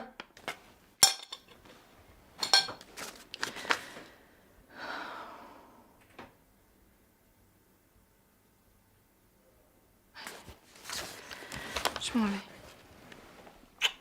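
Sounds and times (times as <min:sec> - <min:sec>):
crockery and cutlery clinking: 0:01.0 - 0:01.6, 0:02.4 - 0:02.8.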